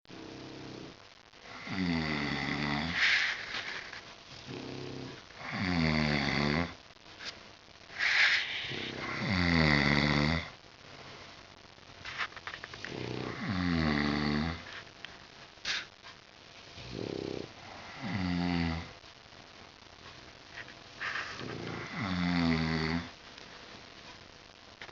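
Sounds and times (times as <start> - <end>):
pets snoring: 0.1 - 6.8, 8.0 - 10.6, 12.8 - 14.8, 16.8 - 19.0, 21.0 - 23.2
sharp snort: 8.0 - 9.4.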